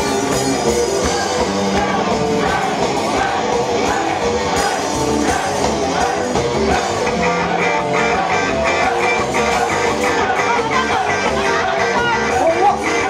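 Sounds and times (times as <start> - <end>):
electric guitar: 0.0 - 13.0
live rock band playing: 0.0 - 13.0
quick high guitar riff: 0.0 - 13.0.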